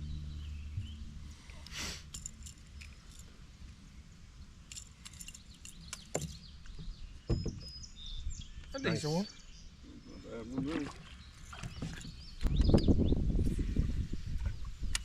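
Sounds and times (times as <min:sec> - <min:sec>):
low steady rumble: 0:00.0 - 0:08.5
metallic clinks of fishing pliers: 0:02.0 - 0:03.3, 0:04.7 - 0:06.0.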